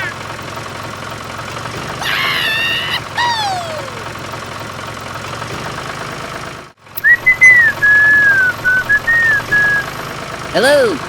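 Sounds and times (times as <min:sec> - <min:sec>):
low engine hum: 0:00.0 - 0:11.0
person whistling a tune: 0:07.0 - 0:09.9.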